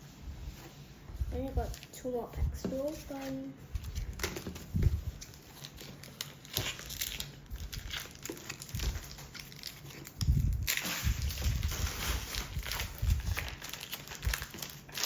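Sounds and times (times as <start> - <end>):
foil wrapper crinkling: 3.7 - 15.0.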